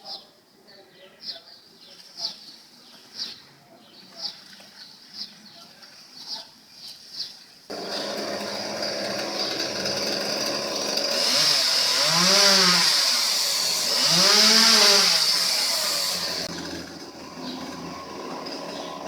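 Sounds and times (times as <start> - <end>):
chainsaw running and revving: 7.7 - 19.0.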